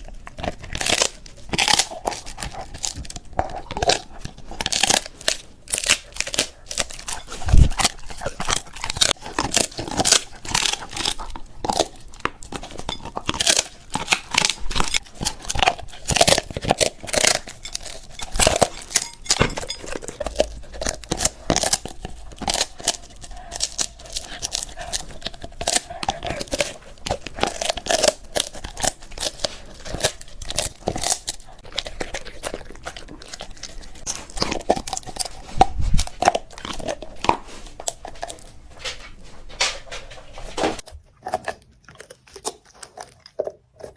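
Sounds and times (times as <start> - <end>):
dog crunching bones: 0.0 - 43.9.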